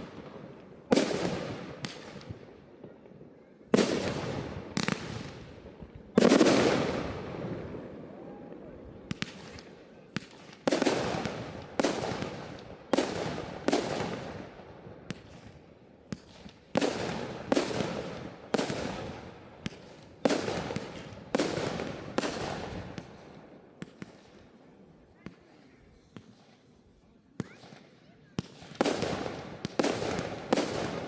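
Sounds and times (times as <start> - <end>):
fireworks bangs: 6.2 - 7.9, 9.1 - 14.5, 16.1 - 24.3
small firework pops: 9.0 - 14.2, 15.1 - 24.4, 25.2 - 26.6, 27.4 - 31.0.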